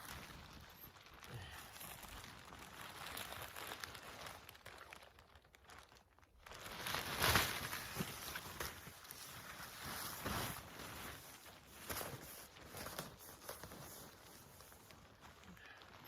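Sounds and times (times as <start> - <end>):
tent fabric rustling: 6.5 - 16.0.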